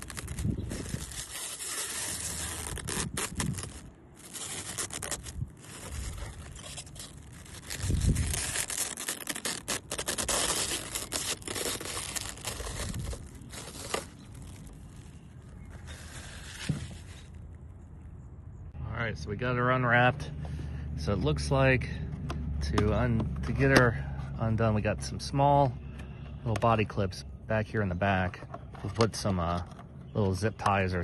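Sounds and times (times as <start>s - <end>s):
plastic wrapping tearing and crinkling: 0.0s - 17.4s.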